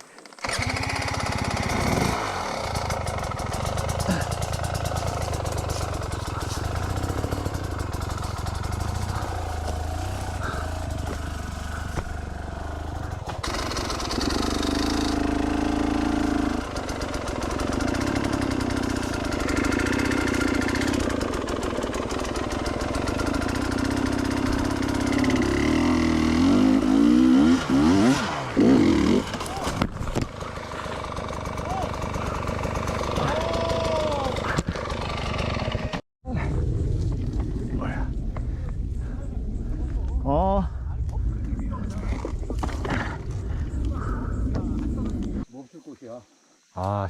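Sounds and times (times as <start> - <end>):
dirt bike engine revving: 0.4 - 36.0.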